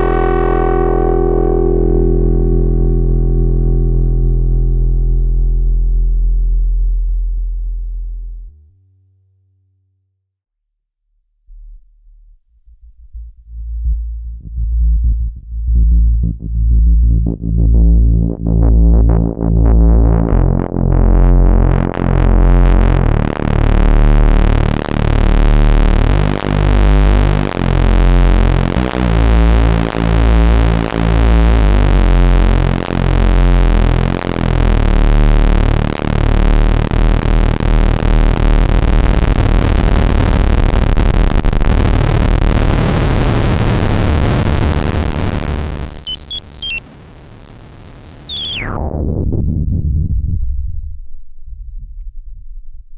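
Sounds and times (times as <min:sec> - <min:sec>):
synthesizer bass sequence: 0:00.0 - 0:07.0, 0:13.4 - 0:50.2
high synthesizer bleeps: 0:21.3 - 0:38.6, 0:42.8 - 0:49.0.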